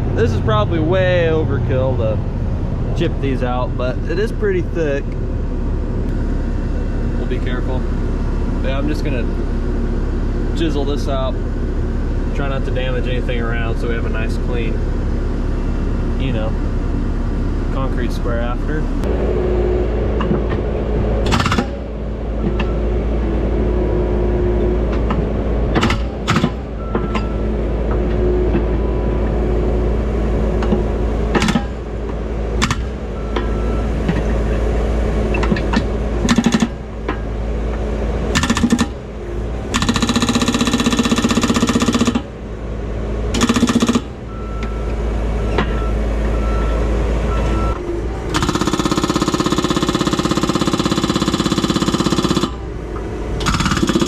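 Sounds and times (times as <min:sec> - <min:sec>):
diesel engine running: 0:00.0 - 0:54.0
hydraulic breaker hammering concrete: 0:21.2 - 0:21.8, 0:25.7 - 0:27.2, 0:31.3 - 0:31.8, 0:32.6 - 0:33.0, 0:35.5 - 0:36.8, 0:38.3 - 0:39.0, 0:39.7 - 0:42.3, 0:43.3 - 0:44.2, 0:48.3 - 0:52.6, 0:53.4 - 0:54.0.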